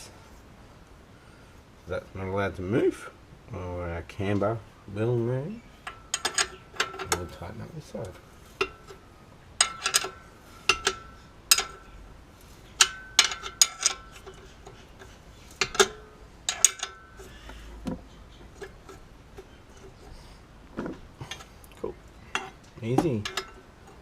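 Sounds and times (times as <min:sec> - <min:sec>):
metal tools clinking on steel: 0:05.8 - 0:20.2, 0:20.9 - 0:24.0.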